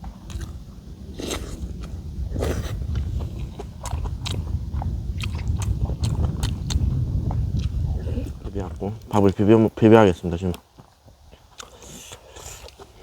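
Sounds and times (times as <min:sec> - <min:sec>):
person biting and chewing food: 0:00.0 - 0:08.5, 0:11.4 - 0:13.0
wind buffeting microphone: 0:00.0 - 0:10.5.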